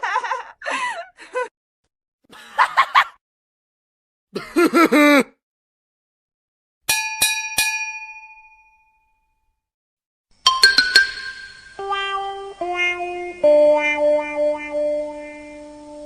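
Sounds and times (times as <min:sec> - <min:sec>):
small bell ringing: 0:06.9 - 0:09.4, 0:10.5 - 0:11.8.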